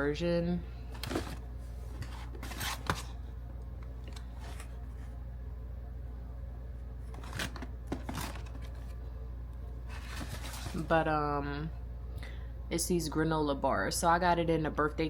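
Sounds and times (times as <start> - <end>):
steady low hum: 0.0 - 15.0
snack packaging rustling: 7.0 - 9.0, 9.9 - 10.9.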